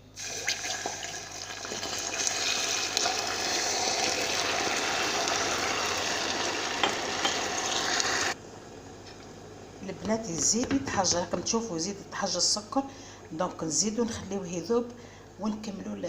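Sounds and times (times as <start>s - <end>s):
water hissing on hot caramel: 0.2s - 8.4s.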